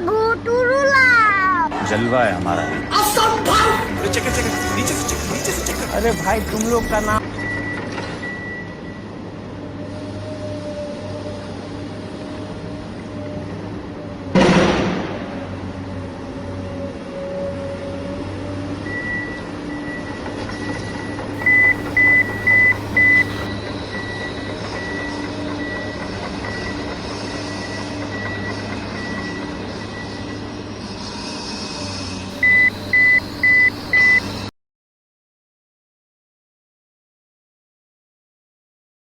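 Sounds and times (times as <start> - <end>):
reversing alarm beeping: 6.0 - 8.7, 21.4 - 23.5, 32.3 - 34.5
vehicle engine running: 21.4 - 23.5, 32.3 - 34.5.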